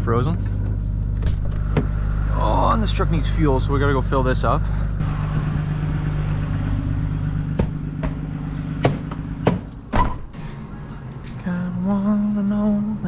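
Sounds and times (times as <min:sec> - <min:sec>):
truck engine idling: 0:00.0 - 0:13.0
loud thump: 0:07.5 - 0:10.3.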